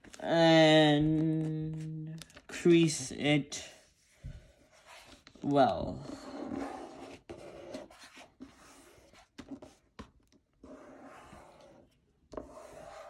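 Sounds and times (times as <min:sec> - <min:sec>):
paper rustling being creased: 0:01.4 - 0:03.0.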